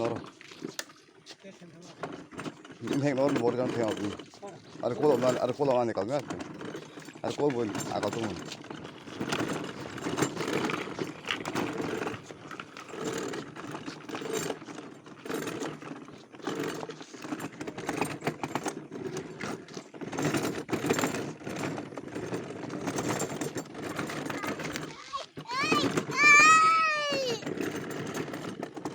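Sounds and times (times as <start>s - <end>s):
rattling and clicking: 1.8s - 28.9s
toy car electric motor running: 2.8s - 8.4s, 20.1s - 28.9s.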